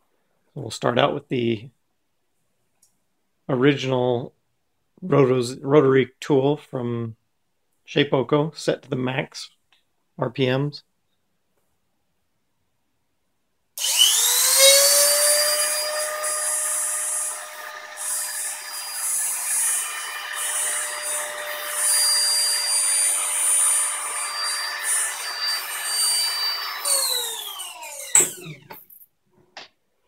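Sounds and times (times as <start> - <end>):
high-pitched motor whine: 13.8 - 28.7.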